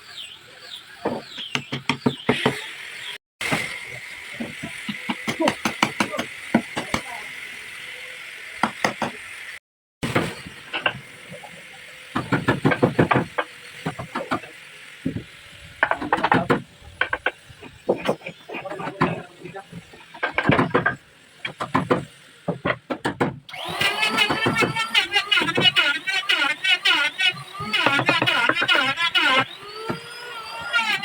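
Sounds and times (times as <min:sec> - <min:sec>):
tools knocking and scraping wood: 0:01.0 - 0:02.7, 0:04.3 - 0:07.1, 0:08.6 - 0:09.2, 0:10.0 - 0:11.1, 0:12.1 - 0:30.2.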